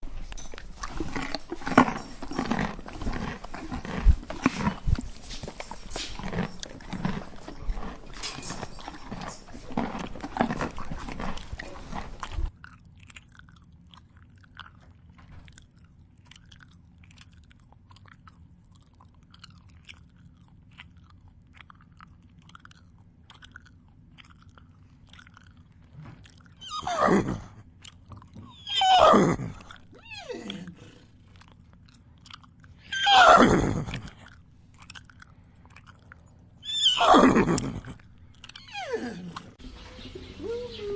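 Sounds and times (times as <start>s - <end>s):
animal chewing and crunching food: 0.0s - 40.9s.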